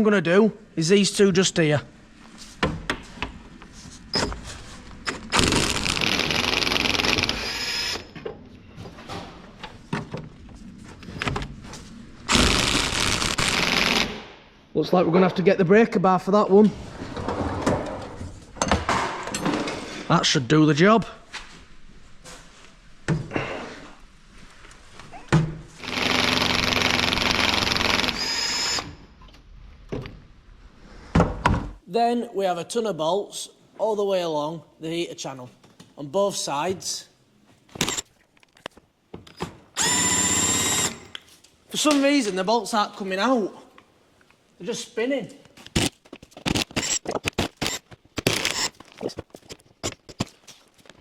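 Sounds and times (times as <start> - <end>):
power tool whining: 5.4 - 8.2, 25.8 - 29.0, 39.8 - 41.2, 47.6 - 48.7.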